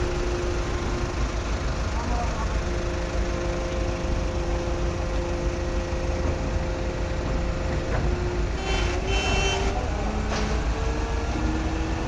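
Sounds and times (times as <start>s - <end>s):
diesel engine rumbling: 0.0s - 12.0s.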